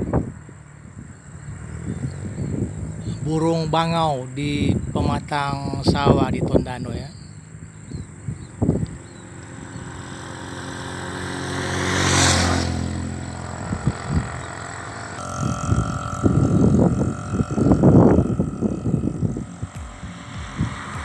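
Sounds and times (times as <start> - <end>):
motor vehicle passing: 0.0 - 6.0, 7.0 - 21.0
low rumbling knocks: 19.8 - 21.0.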